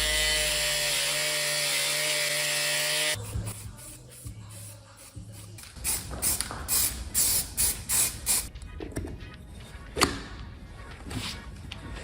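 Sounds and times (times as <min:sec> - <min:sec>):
pressurised spray hissing: 0:03.2 - 0:08.5.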